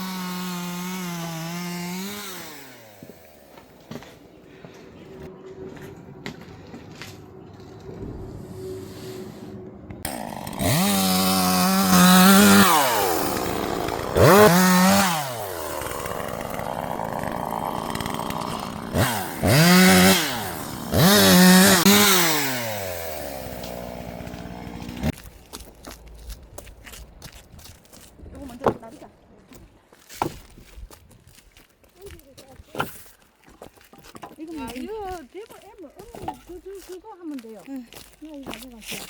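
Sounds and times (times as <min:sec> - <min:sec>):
chainsaw revving: 0:00.0 - 0:03.8, 0:10.0 - 0:25.2.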